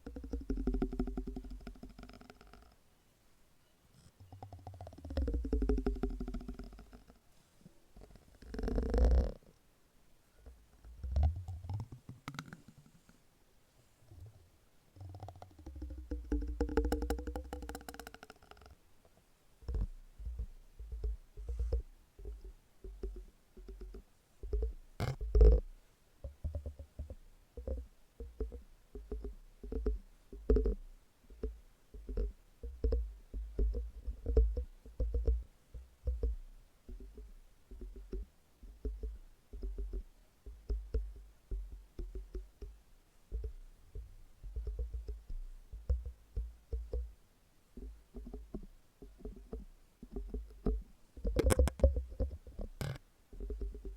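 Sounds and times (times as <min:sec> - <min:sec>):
soft low taps: 0:19.6 - 0:47.2, 0:47.8 - 0:53.9
dull thumps on silicone: 0:19.7 - 0:47.2.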